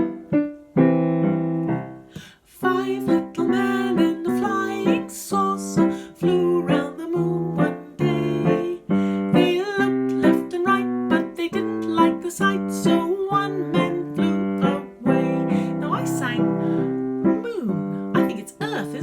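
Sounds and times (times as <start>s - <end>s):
piano playing short notes and chords: 0.0s - 5.1s.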